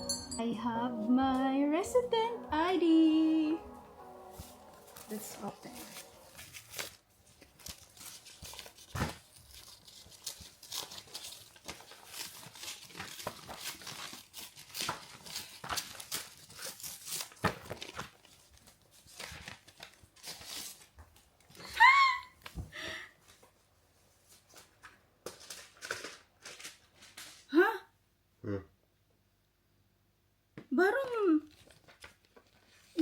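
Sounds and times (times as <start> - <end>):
paper packaging crinkling and tearing: 3.8 - 21.7, 24.3 - 27.5, 31.4 - 33.0.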